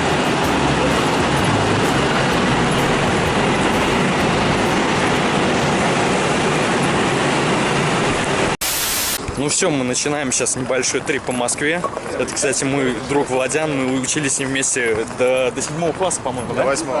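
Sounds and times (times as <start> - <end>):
passenger train running: 0.0 - 8.6.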